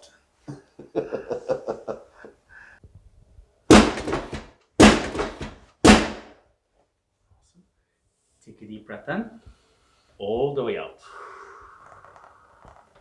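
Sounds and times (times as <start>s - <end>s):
loud thumps: 3.7s - 6.4s.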